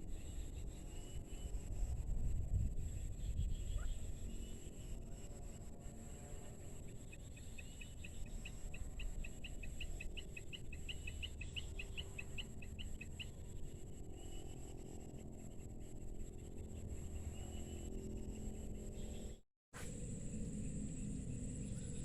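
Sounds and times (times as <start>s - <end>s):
wind rumble on microphone: 0.0s - 6.0s.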